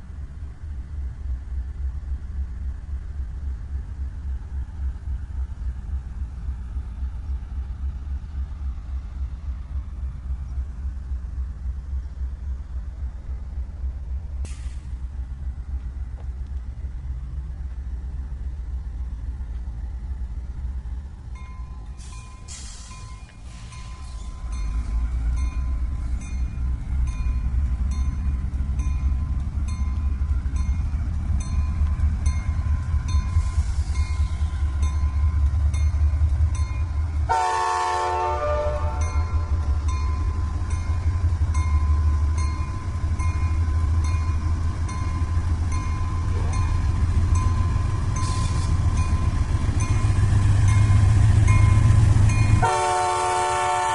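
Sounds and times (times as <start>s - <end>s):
diesel locomotive engine rumble: 0.0s - 53.9s
train horn blast: 37.3s - 39.4s, 52.6s - 53.9s.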